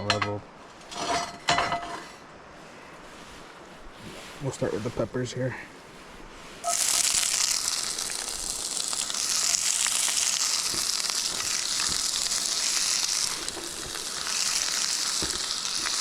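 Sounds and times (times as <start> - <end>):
peppers sizzling in oil: 6.6 - 16.0.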